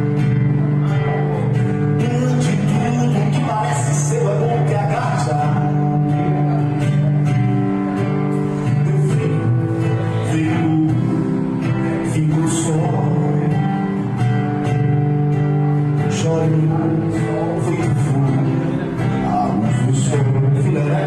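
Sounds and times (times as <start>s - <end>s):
live band playing guitar song: 0.0s - 21.0s.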